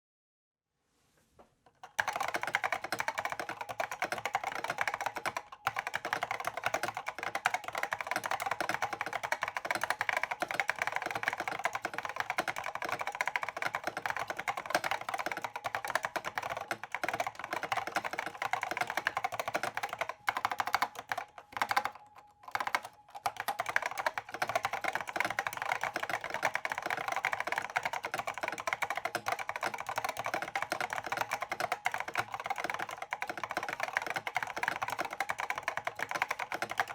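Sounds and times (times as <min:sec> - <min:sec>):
fast keyboard typing: 0:01.8 - 0:36.9.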